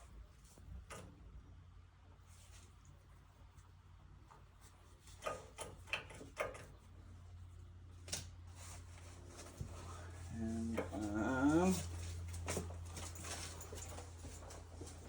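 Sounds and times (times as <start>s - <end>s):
low steady hum: 0.0s - 15.0s
light clicks and knocks: 4.3s - 7.0s.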